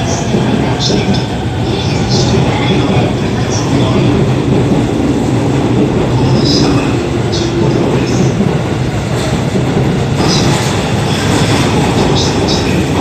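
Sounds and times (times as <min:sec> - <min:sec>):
electric train rumbling: 0:00.0 - 0:13.0.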